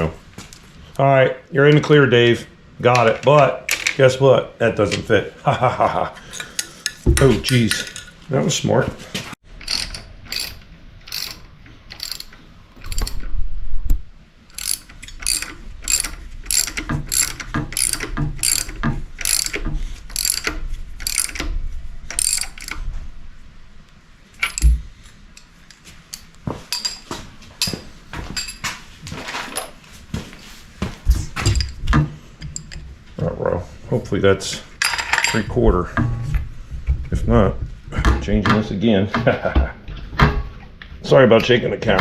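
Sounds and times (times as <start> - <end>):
ratchet wrench clicking: 9.6 - 13.2, 14.5 - 21.4, 22.1 - 22.8.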